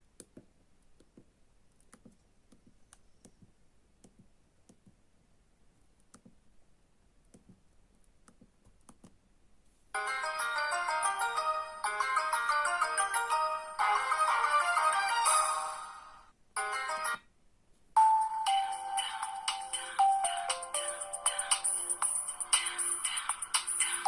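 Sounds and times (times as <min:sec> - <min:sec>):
chiming phone ringtone: 0:10.0 - 0:15.8, 0:18.0 - 0:23.0.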